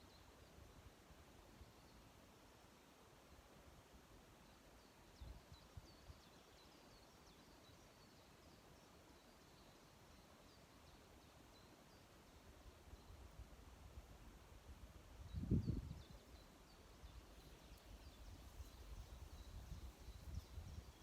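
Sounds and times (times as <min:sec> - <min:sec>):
small birds chirping: 0:04.4 - 0:13.3, 0:15.2 - 0:21.0.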